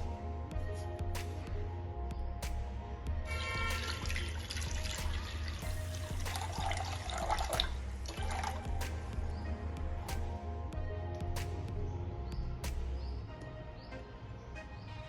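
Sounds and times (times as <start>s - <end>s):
background music with low beat: 0.0s - 15.0s
water running and splashing: 3.8s - 8.7s.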